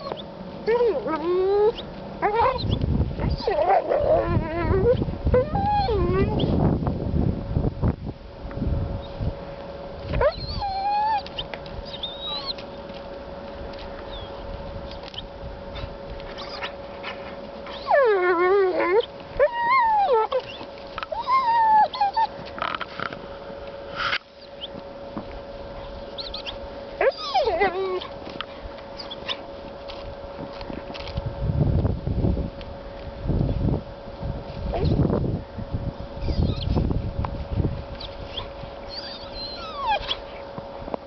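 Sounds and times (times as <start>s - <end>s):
dog whining: 0.0s - 6.6s, 10.1s - 12.7s, 14.1s - 14.4s, 15.8s - 16.8s, 17.7s - 22.4s, 25.8s - 28.2s, 29.0s - 29.4s, 34.7s - 35.0s, 36.2s - 36.8s, 38.0s - 40.4s.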